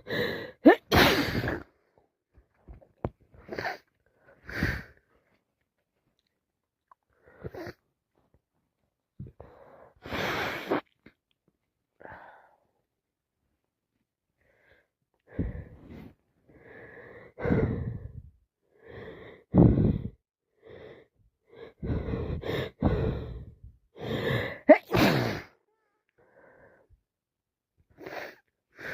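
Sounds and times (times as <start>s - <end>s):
woman sneezing: 0.6s - 1.6s, 24.7s - 25.6s
gasping wheezy breaths: 3.4s - 5.2s, 16.5s - 25.6s.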